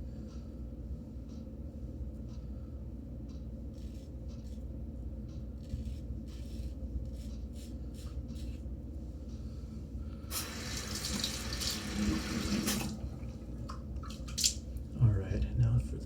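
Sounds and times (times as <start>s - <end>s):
faucet running into sink: 10.3s - 14.5s.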